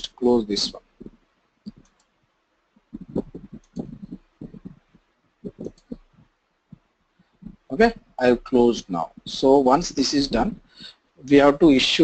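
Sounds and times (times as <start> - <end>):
keyboard and mouse clicks: 3.0 - 4.9, 5.5 - 6.1.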